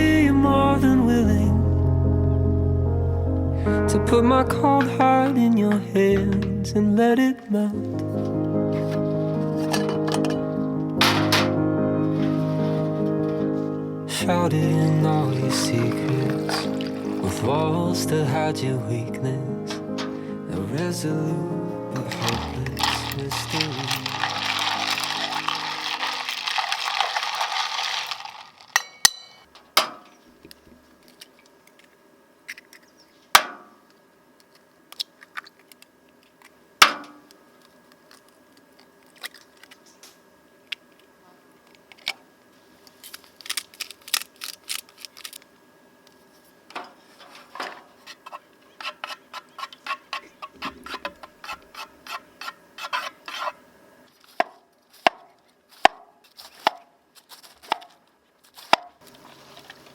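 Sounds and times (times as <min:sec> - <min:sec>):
background music: 0:00.0 - 0:27.0
faint steady hum: 0:00.0 - 0:59.9
utensils and dishes clinking: 0:09.6 - 0:11.6, 0:15.0 - 0:17.5, 0:22.0 - 0:29.5.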